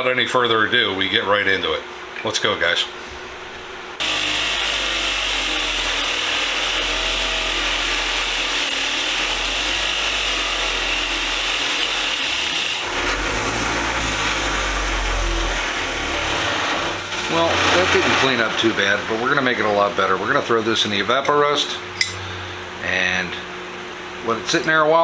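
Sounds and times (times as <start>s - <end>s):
power tool scratching metal: 4.0s - 18.8s.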